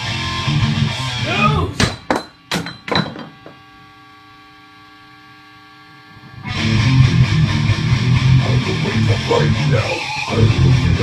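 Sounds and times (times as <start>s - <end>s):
distorted electric guitar metal riff: 0.0s - 1.8s, 6.3s - 11.0s.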